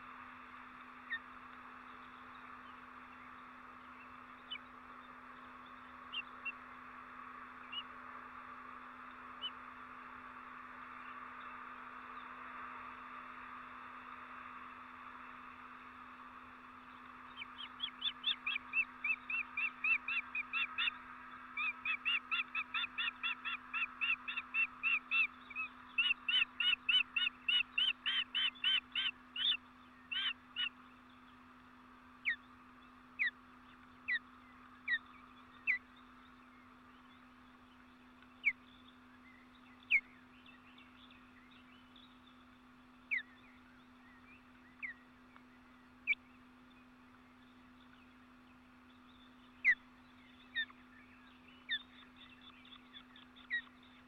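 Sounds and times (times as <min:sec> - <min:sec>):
bird calling: 0:17.3 - 0:30.8, 0:33.1 - 0:48.2, 0:48.9 - 0:54.0.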